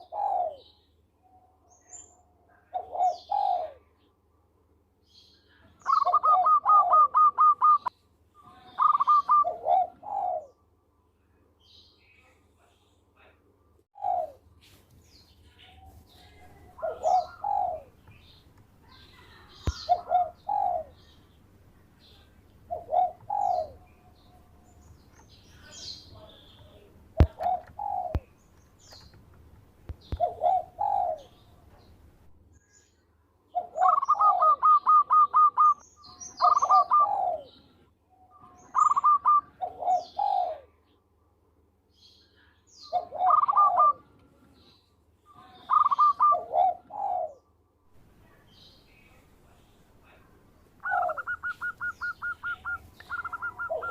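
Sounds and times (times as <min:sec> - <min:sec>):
dove cooing: 0:00.0 - 0:00.7, 0:02.7 - 0:03.9, 0:05.9 - 0:07.9, 0:08.6 - 0:10.6, 0:14.0 - 0:14.5, 0:16.2 - 0:18.2, 0:18.9 - 0:21.0, 0:22.7 - 0:24.4, 0:26.2 - 0:28.3, 0:30.1 - 0:31.6, 0:33.5 - 0:35.8, 0:36.4 - 0:37.6, 0:38.4 - 0:40.8, 0:42.9 - 0:44.0, 0:45.4 - 0:47.5, 0:50.8 - 0:53.9.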